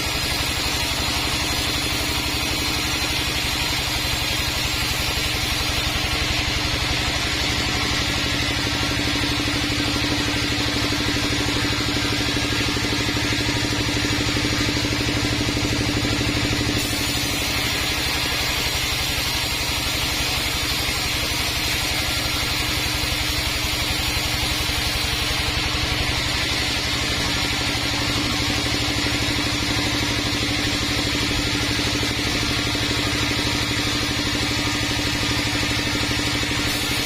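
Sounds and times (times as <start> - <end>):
sawmill humming: 0.0 - 37.0.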